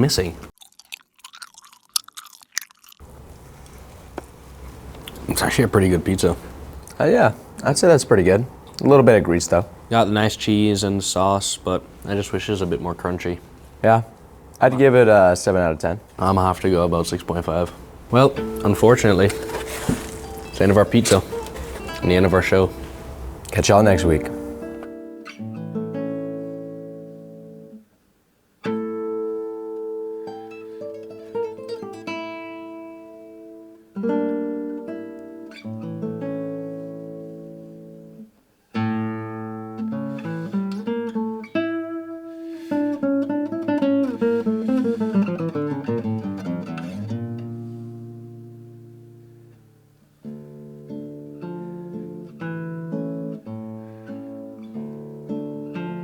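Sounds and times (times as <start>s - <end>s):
acoustic guitar chords: 16.2s - 27.9s, 28.6s - 56.0s.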